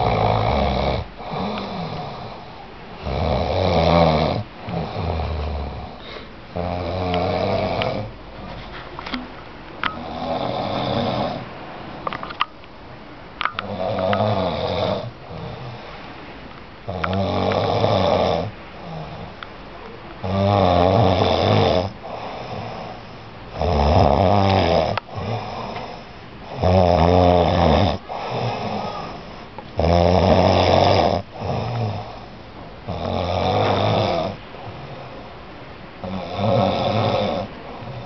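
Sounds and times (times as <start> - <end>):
person snoring: 0.0 - 8.1, 10.0 - 11.4, 13.6 - 15.8, 16.9 - 19.3, 20.2 - 32.3, 32.9 - 35.0, 36.0 - 38.0
quiet breath: 5.8 - 6.4, 28.0 - 29.6.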